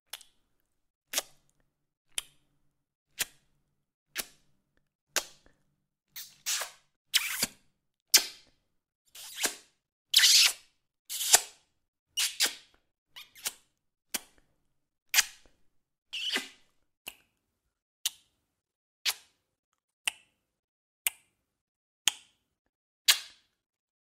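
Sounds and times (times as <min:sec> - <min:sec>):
lip-smack kisses: 0:04.2 - 0:04.4, 0:06.2 - 0:08.5.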